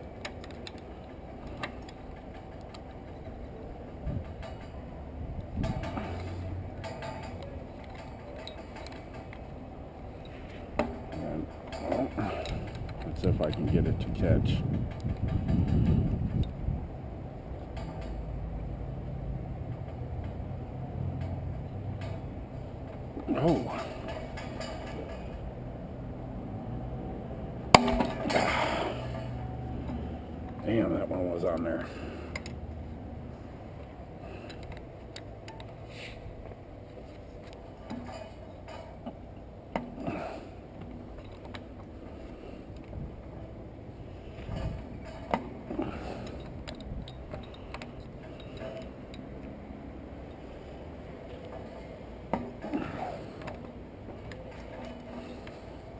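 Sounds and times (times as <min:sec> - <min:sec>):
metal scraping and rattling: 0:00.0 - 0:16.7, 0:19.6 - 0:25.7, 0:27.6 - 0:49.5, 0:50.2 - 0:55.9
tools clicking and clinking on metal: 0:00.1 - 0:16.6, 0:21.0 - 0:25.5, 0:27.7 - 0:32.6, 0:33.8 - 0:35.9, 0:36.9 - 0:43.5, 0:44.2 - 0:50.4.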